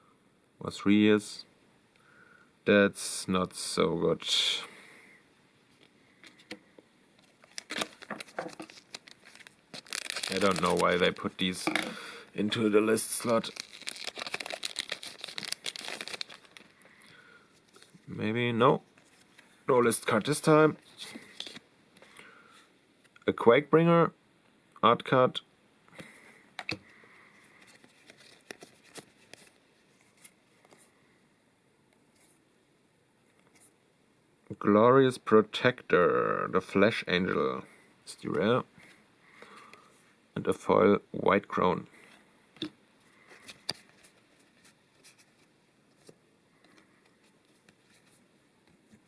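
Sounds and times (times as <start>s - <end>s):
cards clicking and rustling: 7.2s - 16.7s, 27.6s - 30.8s.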